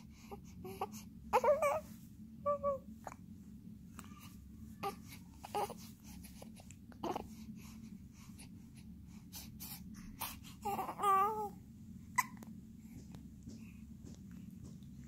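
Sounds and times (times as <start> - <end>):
baby hiccuping: 12.2 - 12.4.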